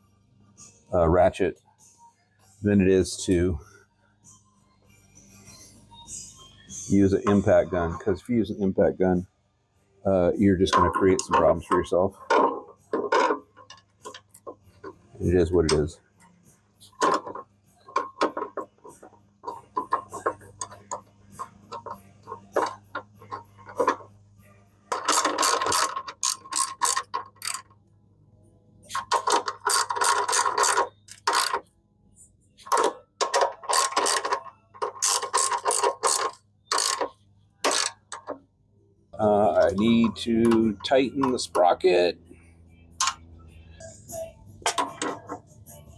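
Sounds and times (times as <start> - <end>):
socket ratchet clicking: 16.9 - 24.1, 24.9 - 27.8, 28.9 - 31.7, 32.6 - 38.4, 43.0 - 43.2.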